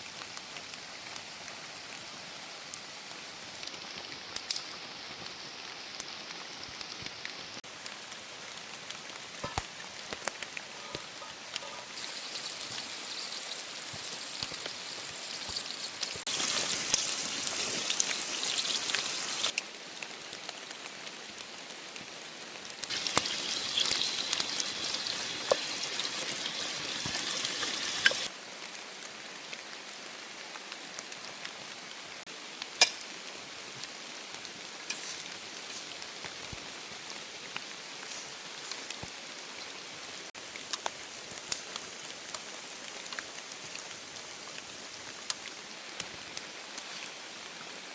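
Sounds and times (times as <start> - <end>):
rain pattering: 0.1 - 47.9
food sizzling in a pan: 11.9 - 19.6, 22.8 - 28.3, 32.6 - 39.7.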